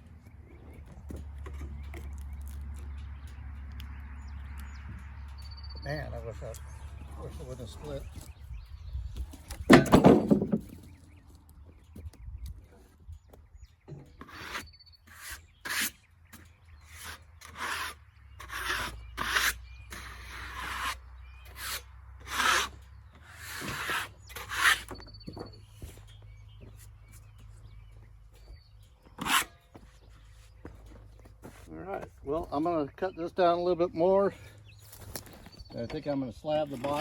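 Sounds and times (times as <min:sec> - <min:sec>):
scraping against wood: 0:16.9 - 0:27.4, 0:29.1 - 0:31.7.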